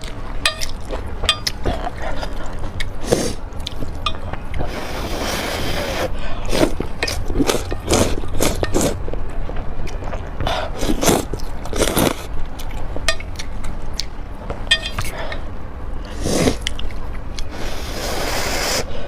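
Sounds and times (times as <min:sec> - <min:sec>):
chewing and biting food: 0:00.0 - 0:04.7, 0:06.4 - 0:14.2, 0:16.5 - 0:17.5.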